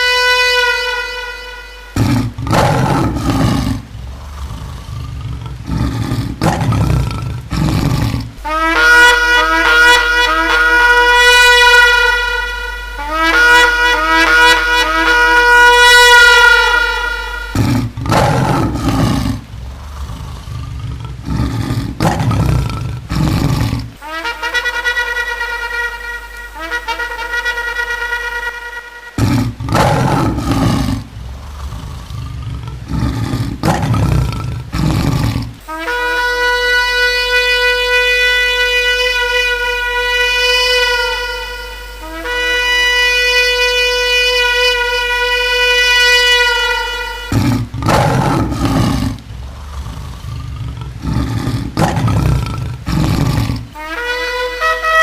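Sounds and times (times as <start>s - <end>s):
shofar blasts: 0.0s - 3.6s, 8.4s - 17.9s, 24.0s - 30.6s, 35.6s - 47.6s, 53.8s - 55.0s
ram's horn steady note: 0.0s - 4.5s, 8.3s - 18.0s, 23.9s - 29.4s, 35.5s - 47.8s, 53.3s - 55.0s.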